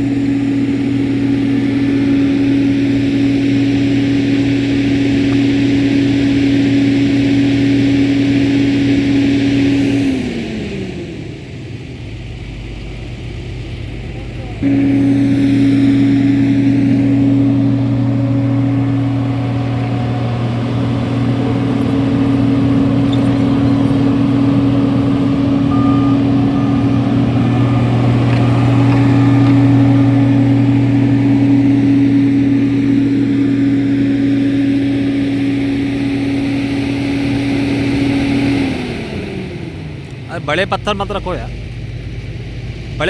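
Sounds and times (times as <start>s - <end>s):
heavy diesel engine running: 0.0s - 43.0s.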